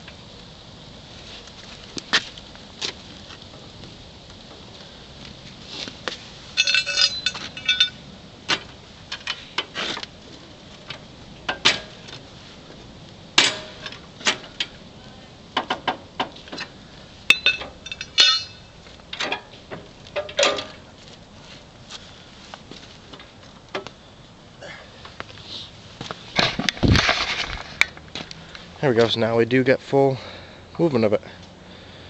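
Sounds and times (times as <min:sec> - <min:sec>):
metal knocks and clanks: 0:17.3 - 0:20.8.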